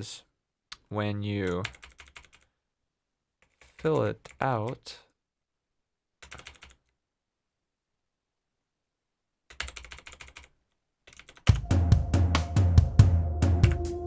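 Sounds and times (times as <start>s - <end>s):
electronic drum beat: 11.5s - 14.0s.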